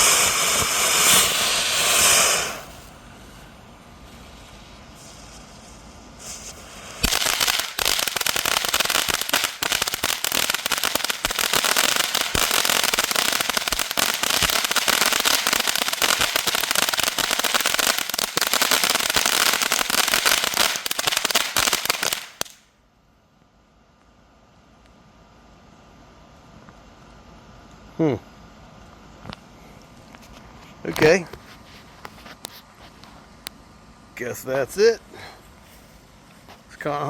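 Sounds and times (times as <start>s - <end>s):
firework fountain crackling: 0.0s - 22.7s.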